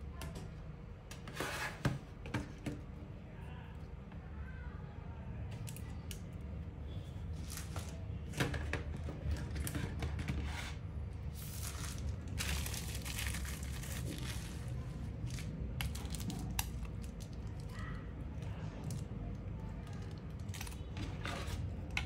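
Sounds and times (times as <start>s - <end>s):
crinkling and tearing rustles: 11.3s - 21.9s.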